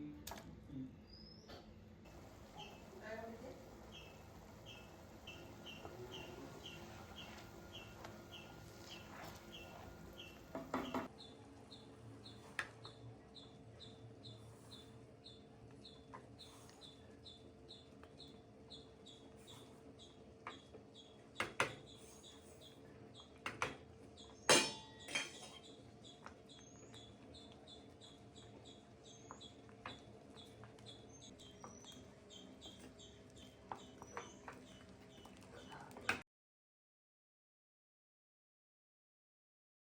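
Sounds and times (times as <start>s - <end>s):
bird chirping: 1.1s - 23.3s, 24.2s - 35.9s
kitchen utensils clinking: 5.3s - 11.1s, 24.5s - 25.6s.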